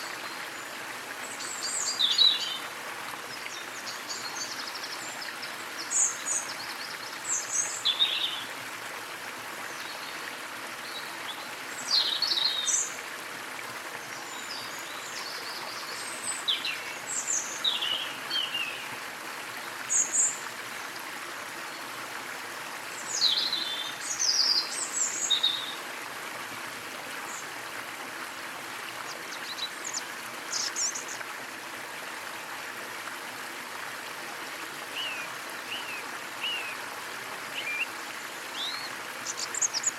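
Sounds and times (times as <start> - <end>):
small waterfall splashing: 0.0 - 39.9
birds chirping: 38.5 - 39.9.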